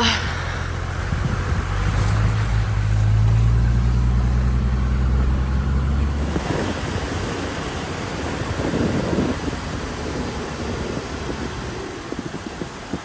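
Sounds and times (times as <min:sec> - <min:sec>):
vehicle engine humming: 0:00.0 - 0:13.0
wind-like rush: 0:00.0 - 0:13.0.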